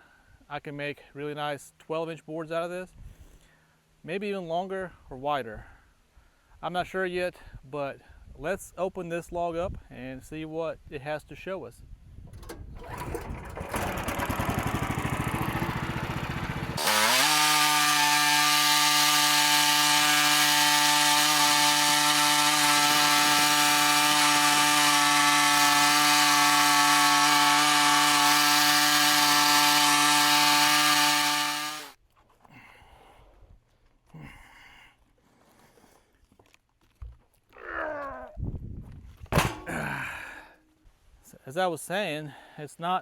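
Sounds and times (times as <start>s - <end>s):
sawmill engine running: 12.3s - 31.9s
saw blade cutting log: 12.3s - 32.0s.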